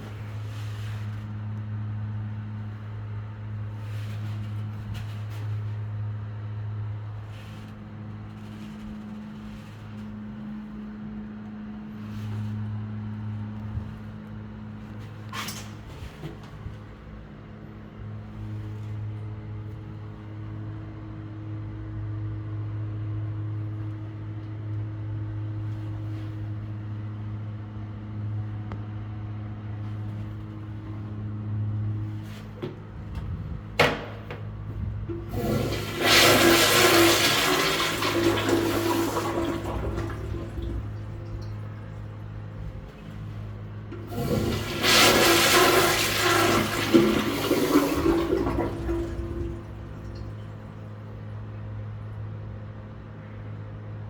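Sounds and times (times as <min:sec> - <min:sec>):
toilet flushing: 0:35.0 - 0:51.0
water rushing: 0:35.1 - 0:42.1, 0:44.0 - 0:50.6.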